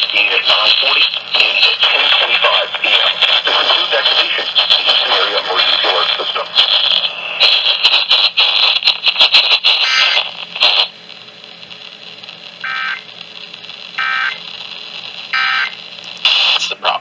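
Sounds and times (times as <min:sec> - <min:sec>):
scratchy crackling noise: 0:00.0 - 0:17.0
buzzy digital data bursts: 0:07.6 - 0:10.9, 0:12.6 - 0:13.1, 0:13.8 - 0:14.5, 0:15.3 - 0:16.7.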